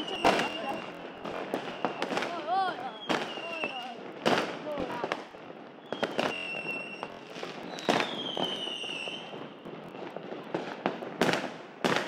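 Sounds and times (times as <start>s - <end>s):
firework bang: 0.0s - 5.2s, 5.9s - 9.8s
firework pops and crackles: 0.0s - 12.0s.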